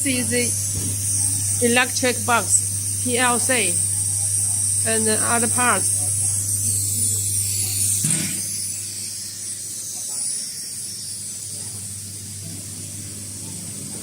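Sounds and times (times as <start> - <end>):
machine electrical hum: 0.0 - 14.0.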